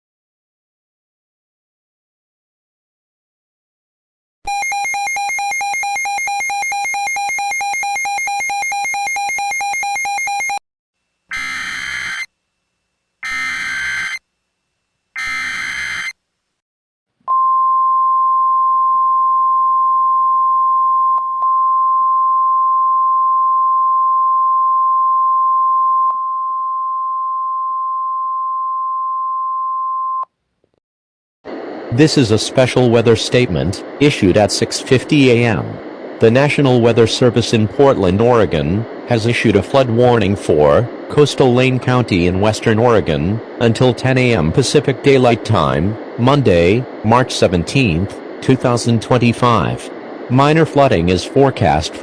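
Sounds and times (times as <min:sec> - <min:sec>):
steady warning alarm tone: 0:04.5 - 0:10.6, 0:11.3 - 0:12.3, 0:13.2 - 0:14.2, 0:15.2 - 0:16.2
buzzy electronic tone: 0:11.3 - 0:12.3, 0:13.2 - 0:14.2, 0:15.2 - 0:16.2
screeching data bursts: 0:11.3 - 0:12.3, 0:13.2 - 0:14.2, 0:15.2 - 0:16.2.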